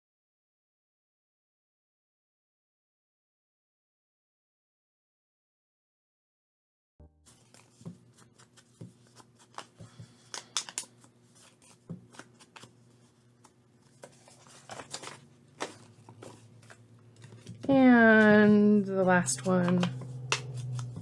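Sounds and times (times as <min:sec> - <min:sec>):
faint steady hum: 0:07.3 - 0:21.0
paper rustling and scraping: 0:07.3 - 0:21.0.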